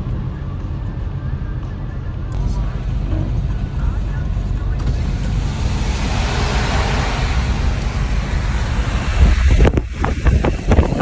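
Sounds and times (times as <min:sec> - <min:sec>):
rushing wind: 0:02.2 - 0:11.0
wind buffeting microphone: 0:02.4 - 0:11.0.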